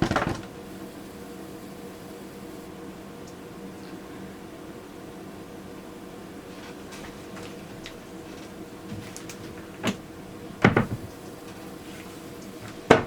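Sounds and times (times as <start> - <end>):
faint hum: 0.0 - 13.0
hard objects knocking: 10.6 - 11.1.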